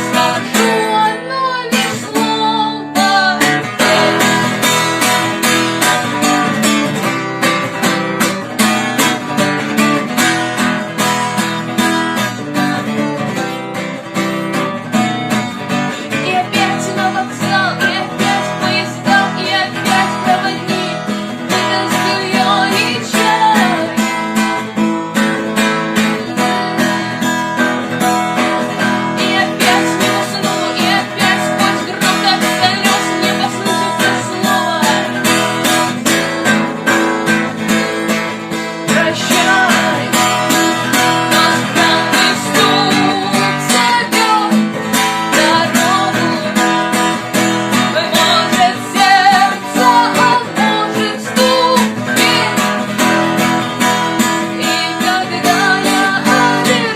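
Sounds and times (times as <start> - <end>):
acoustic guitar strumming: 0.0 - 56.9.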